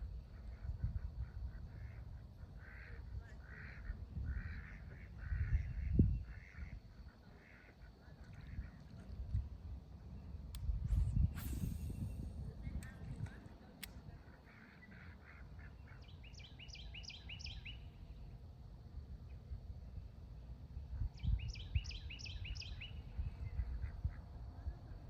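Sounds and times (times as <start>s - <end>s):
steady low rumble: 0.0s - 7.0s, 17.8s - 25.0s
songbird chirping: 12.8s - 18.4s, 21.0s - 24.1s.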